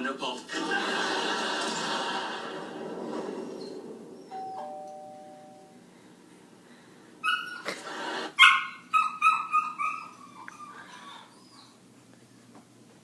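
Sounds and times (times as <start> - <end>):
ding-dong doorbell chime: 4.3 - 5.8
dog barking: 8.4 - 10.1.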